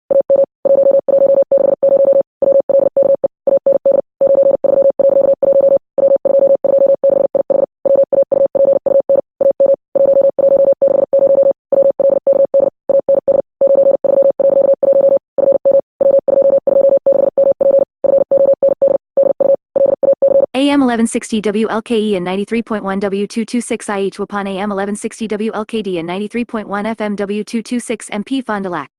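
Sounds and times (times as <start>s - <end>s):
morse code tone: 0.1s - 23.1s.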